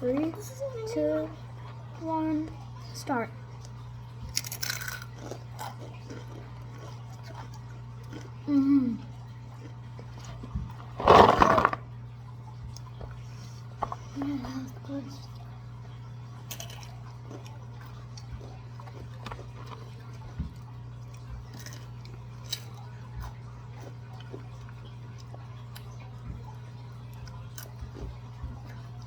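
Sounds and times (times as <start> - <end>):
people chewing and crunching chips: 3.5 - 11.9, 12.5 - 29.0.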